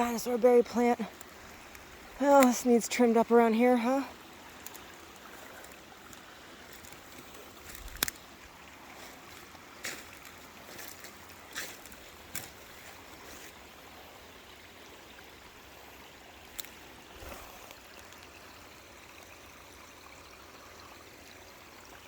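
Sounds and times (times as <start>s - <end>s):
water trickling: 0.0s - 22.0s.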